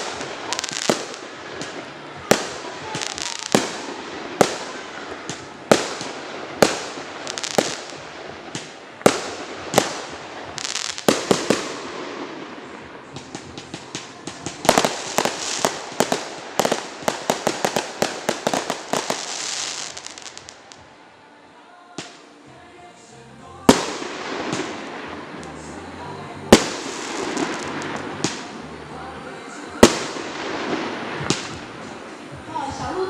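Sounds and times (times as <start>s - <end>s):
fireworks bangs: 0.0s - 20.9s, 23.6s - 32.9s
fireworks hissing: 0.0s - 20.9s, 23.6s - 33.0s
fireworks crackling: 0.0s - 21.2s, 22.0s - 33.0s.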